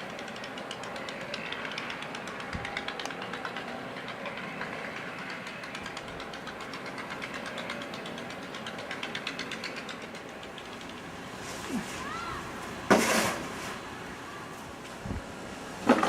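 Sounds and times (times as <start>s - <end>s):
engine running with rapid ticking: 0.0s - 16.0s.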